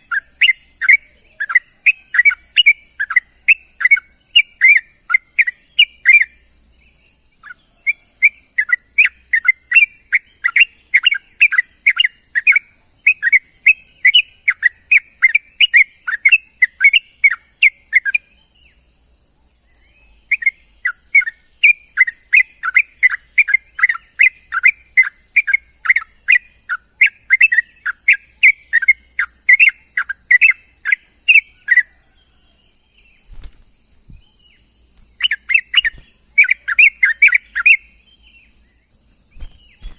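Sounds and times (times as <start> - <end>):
bird chirping: 0.0 - 18.9, 19.7 - 39.9.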